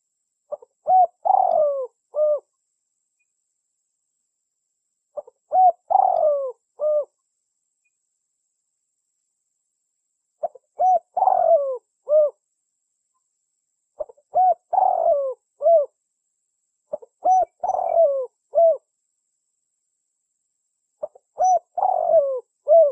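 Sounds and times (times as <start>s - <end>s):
dove cooing: 0.5s - 2.5s, 5.2s - 7.2s, 10.4s - 12.4s, 14.0s - 15.9s, 16.9s - 18.9s, 21.0s - 22.9s.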